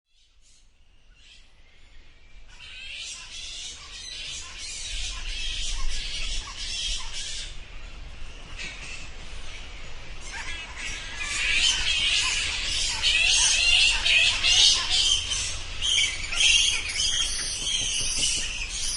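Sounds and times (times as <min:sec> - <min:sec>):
bats squeaking: 0:10.2 - 0:18.9.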